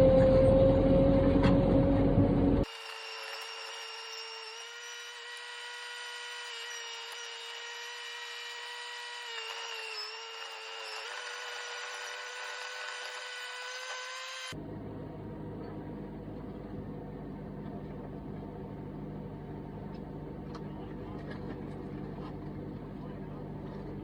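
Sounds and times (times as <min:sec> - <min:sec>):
high mechanical whine: 0:00.0 - 0:24.0.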